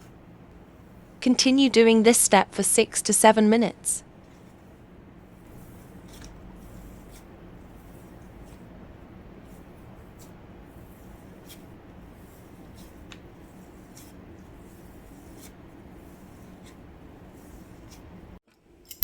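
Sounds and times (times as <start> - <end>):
steady low hum: 0.0 - 19.0
palm scraping on tray: 4.2 - 18.3.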